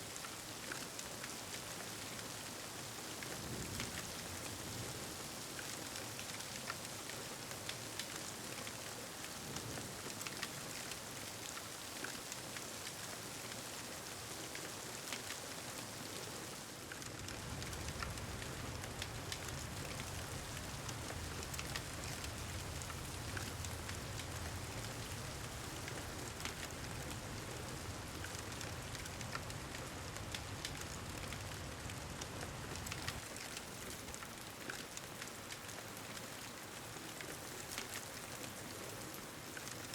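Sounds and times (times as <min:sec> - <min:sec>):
steady rain: 0:00.0 - 0:39.9
wood fire crackling: 0:16.8 - 0:35.8.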